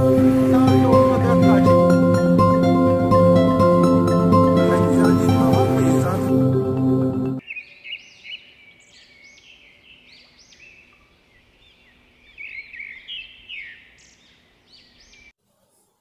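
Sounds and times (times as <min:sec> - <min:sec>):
recorded birdsong through loudspeaker: 0:07.4 - 0:15.3.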